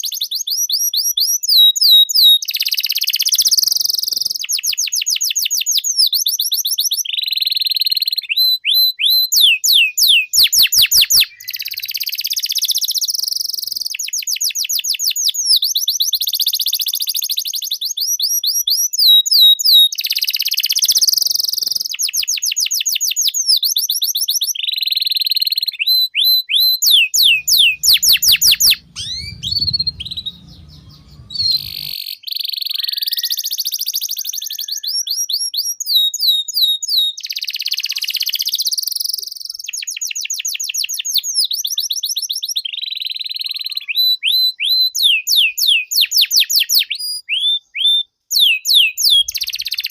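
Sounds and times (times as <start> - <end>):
canary singing: 27.0 - 32.0
low rumble: 27.3 - 31.9.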